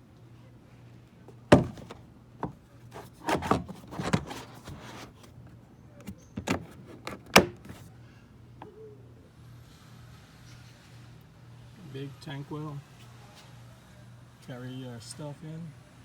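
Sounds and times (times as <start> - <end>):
plastic hatch knocks and clicks: 1.5 - 5.3, 6.0 - 7.8.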